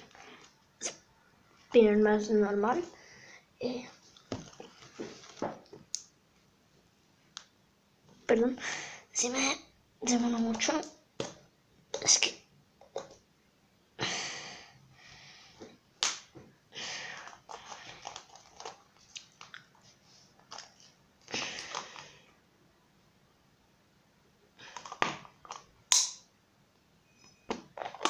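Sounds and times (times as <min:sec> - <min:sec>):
plastic packaging crinkling: 0:17.3 - 0:19.7
sharp clicks and snaps: 0:25.5 - 0:26.2.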